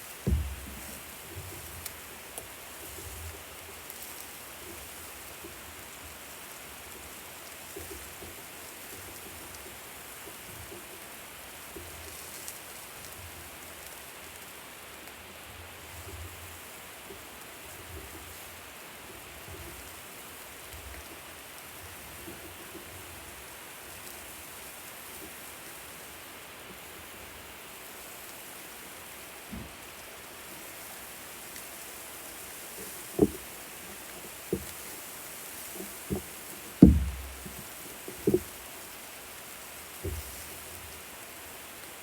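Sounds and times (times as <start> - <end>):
food sizzling on grill: 0.0 - 36.8
soft low bumps: 0.3 - 1.1, 33.2 - 33.5, 36.1 - 38.5
crackles: 30.7 - 39.0.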